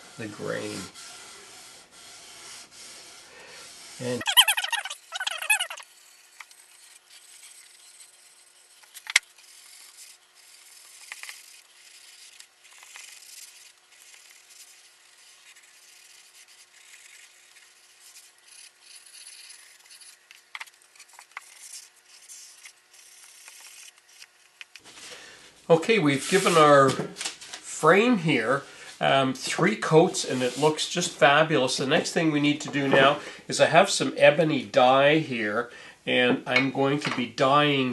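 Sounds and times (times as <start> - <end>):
cloth rubbing on wood: 26.1 - 26.8.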